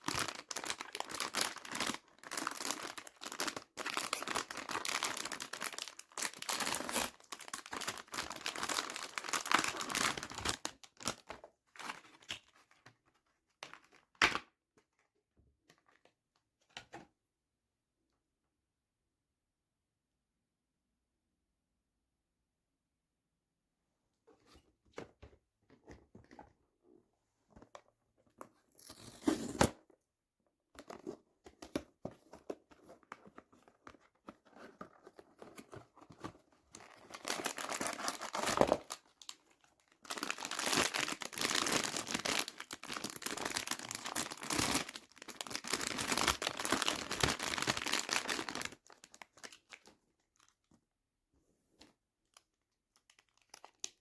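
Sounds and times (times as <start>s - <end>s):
packaging rustling: 0.0s - 12.6s, 32.3s - 49.9s
wrapping crinkling and tearing: 0.0s - 12.6s, 35.5s - 50.5s, 53.0s - 54.0s.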